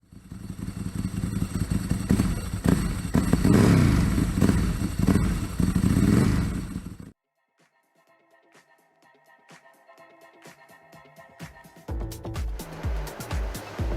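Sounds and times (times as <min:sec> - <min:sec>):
motorcycle engine revving: 0:00.0 - 0:07.2, 0:12.6 - 0:13.9.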